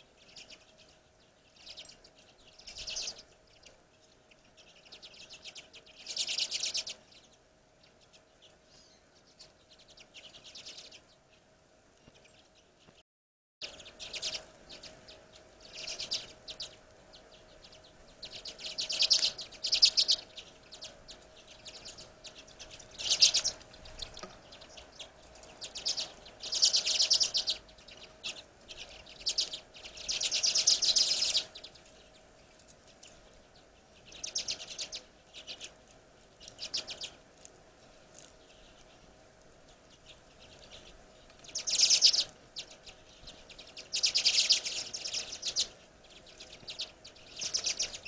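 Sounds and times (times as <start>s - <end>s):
songbirds twittering: 0.0s - 13.0s, 13.6s - 48.0s.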